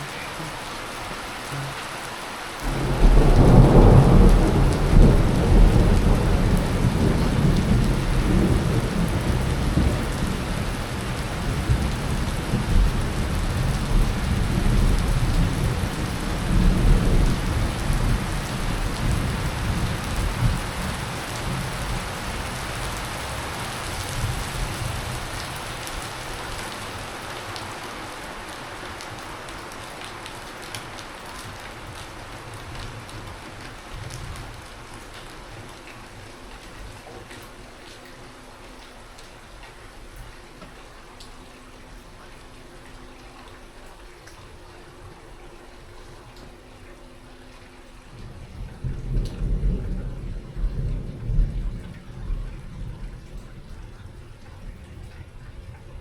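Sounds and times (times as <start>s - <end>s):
steady rain falling: 0.0s - 56.0s
thunder rolling: 2.6s - 22.6s, 48.2s - 53.2s.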